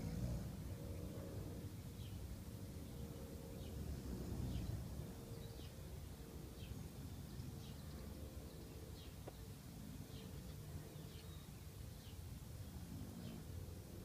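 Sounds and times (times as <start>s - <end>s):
dog snoring softly: 0.0s - 1.6s.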